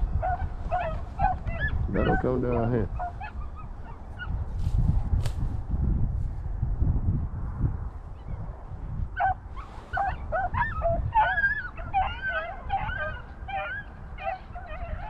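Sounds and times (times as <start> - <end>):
dogs yelping: 0.0 - 4.5, 9.1 - 15.0.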